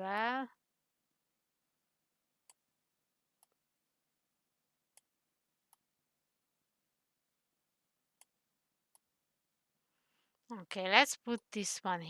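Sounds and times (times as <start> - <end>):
computer mouse clicks: 3.4 - 3.6, 4.9 - 5.1, 5.7 - 5.9, 8.2 - 9.1, 11.3 - 11.5.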